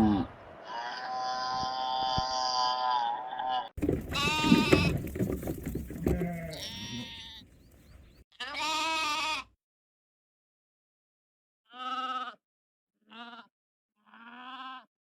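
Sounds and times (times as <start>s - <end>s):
livestock bleating: 0.0s - 5.0s, 6.0s - 7.6s, 8.3s - 9.6s, 11.7s - 12.4s, 13.0s - 14.9s.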